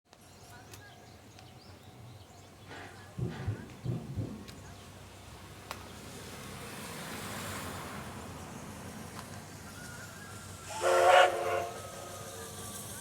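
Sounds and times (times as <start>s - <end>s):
steam locomotive running: 6.2s - 13.0s
steam whistle blast: 10.1s - 12.9s.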